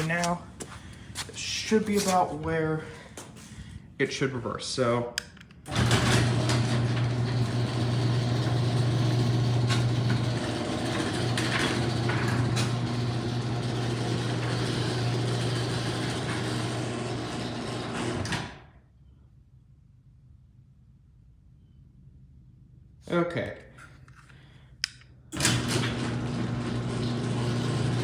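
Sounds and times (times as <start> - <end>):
garage door rattling: 5.6 - 18.6, 25.3 - 28.0
garage door opener motor humming: 5.6 - 18.8, 25.3 - 28.0.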